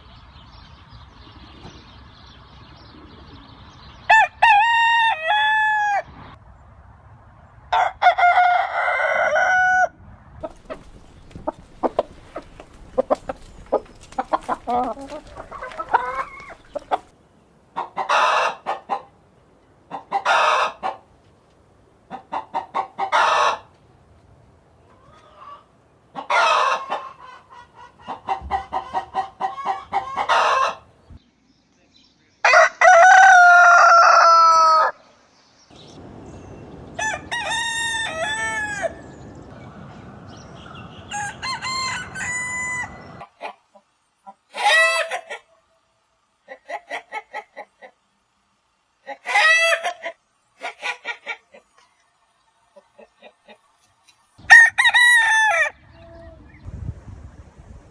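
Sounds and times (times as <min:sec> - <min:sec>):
rooster crowing: 0:04.1 - 0:06.1, 0:07.7 - 0:10.0, 0:32.4 - 0:35.0, 0:36.9 - 0:43.2, 0:54.4 - 0:55.8
chickens clucking: 0:10.4 - 0:23.8, 0:24.8 - 0:31.2, 0:35.7 - 0:45.6, 0:46.4 - 0:48.1, 0:49.0 - 0:54.0.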